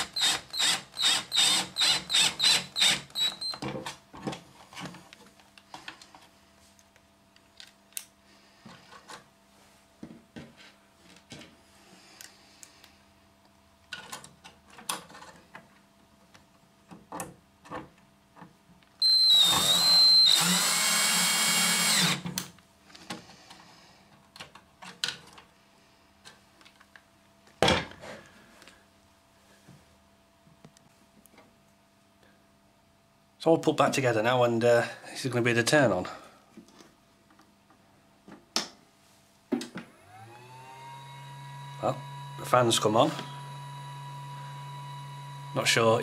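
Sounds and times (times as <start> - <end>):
power drill driving screws: 0.0 - 3.6, 19.0 - 22.3, 40.1 - 45.8.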